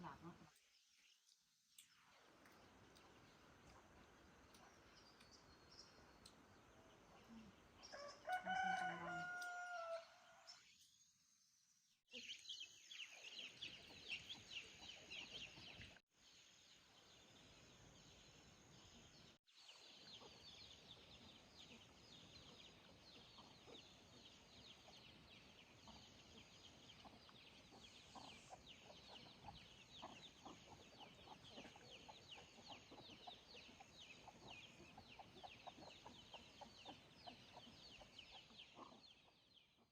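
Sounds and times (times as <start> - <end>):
rooster crowing: 7.9 - 10.1.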